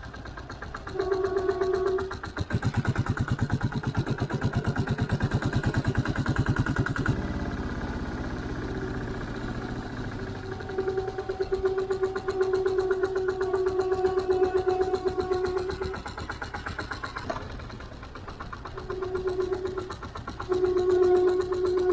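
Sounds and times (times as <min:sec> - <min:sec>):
vehicle engine running: 0:00.0 - 0:21.9
drum brake squealing: 0:09.2 - 0:17.5, 0:18.7 - 0:21.9.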